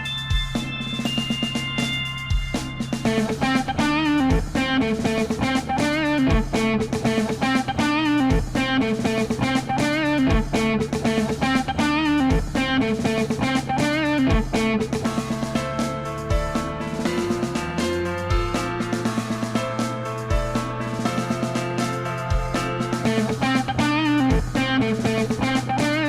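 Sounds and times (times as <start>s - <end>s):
rock music with electric guitar: 0.0s - 26.0s.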